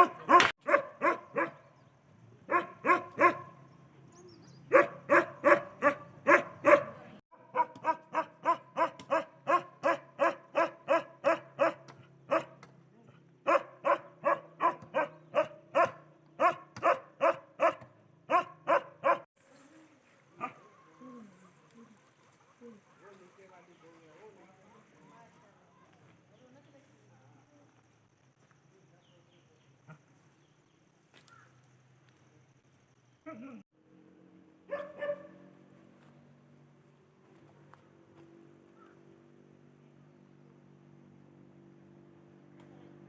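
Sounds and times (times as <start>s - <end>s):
dog barking: 0.0s - 1.7s, 2.5s - 3.6s, 4.7s - 12.6s, 13.4s - 19.3s, 34.7s - 35.5s.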